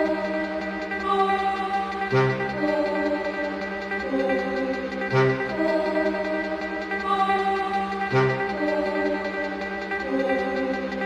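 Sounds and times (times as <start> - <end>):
sustained instrumental chords: 0.0 - 11.0.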